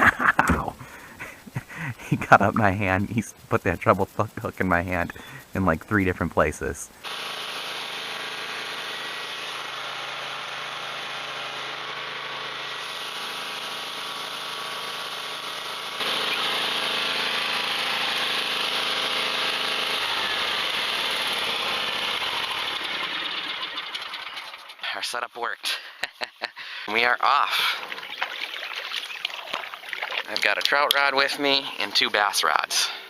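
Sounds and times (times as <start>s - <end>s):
mechanical running hum: 7.1s - 24.8s.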